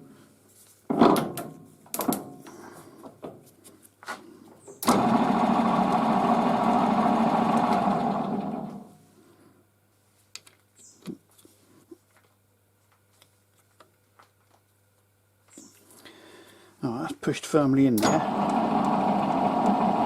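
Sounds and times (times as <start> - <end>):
metal lathe running: 4.9 - 8.8, 18.0 - 20.0.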